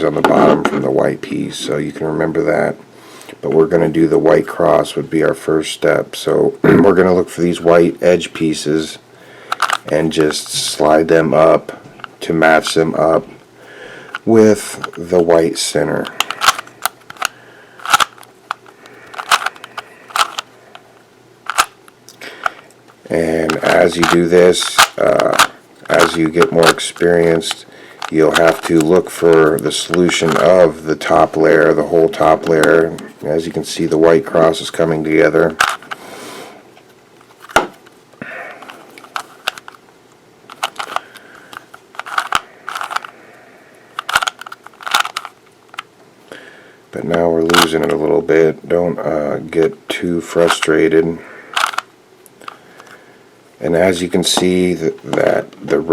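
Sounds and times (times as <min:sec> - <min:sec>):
puzzle cube clicking and rattling: 0:09.5 - 0:10.5, 0:16.0 - 0:20.8, 0:21.4 - 0:21.8, 0:23.4 - 0:31.3, 0:35.4 - 0:36.0, 0:38.6 - 0:39.8, 0:40.5 - 0:43.1, 0:43.9 - 0:45.9, 0:51.6 - 0:52.9.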